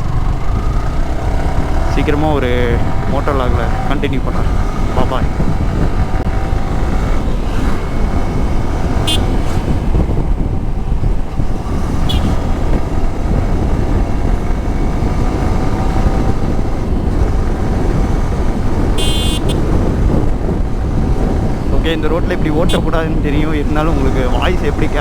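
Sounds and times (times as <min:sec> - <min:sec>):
motorcycle engine rumble: 0:00.0 - 0:25.0
wind rushing on microphone: 0:00.0 - 0:25.0.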